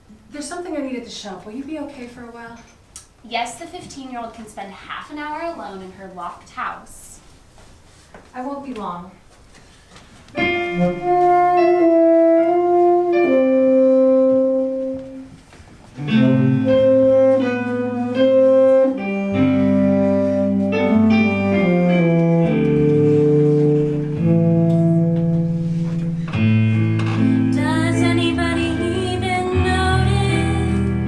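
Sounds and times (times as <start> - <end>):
instrumental music with held chords: 10.4 - 15.3, 16.0 - 31.0.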